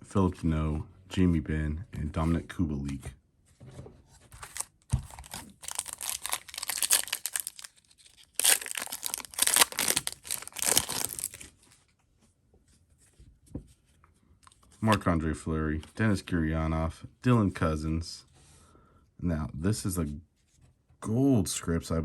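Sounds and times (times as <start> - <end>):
foil wrapper tearing and crinkling: 4.4 - 11.5.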